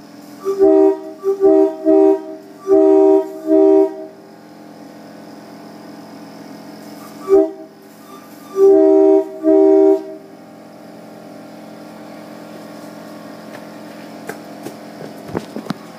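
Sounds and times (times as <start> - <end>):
steady low hum: 0.0 - 15.9
multi-tone horn blasts: 0.4 - 4.3, 7.0 - 10.3.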